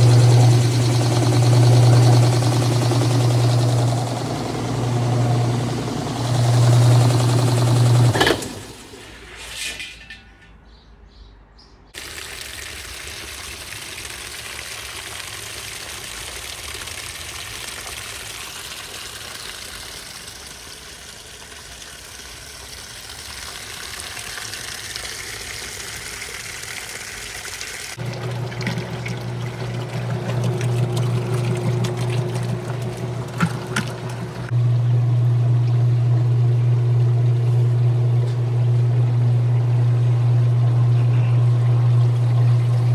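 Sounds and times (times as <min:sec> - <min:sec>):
low motor hum: 0:00.0 - 0:09.0, 0:28.0 - 0:42.9
water pouring and splashing: 0:12.0 - 0:42.9.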